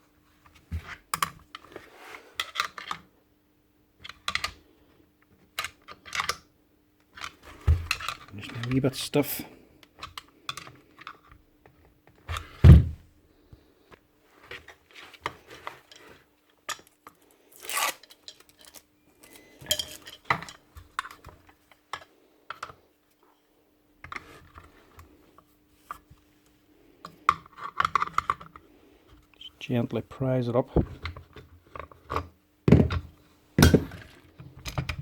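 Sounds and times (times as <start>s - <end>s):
metal parts clicking and clinking: 17.8s - 21.2s.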